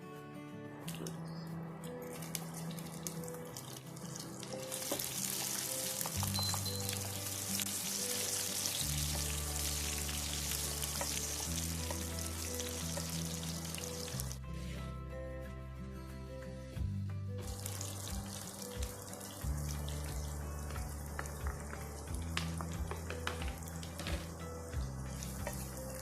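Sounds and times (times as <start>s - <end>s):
food sizzling in hot oil: 4.0s - 14.4s, 17.4s - 26.0s
background music with beat: 14.3s - 26.0s.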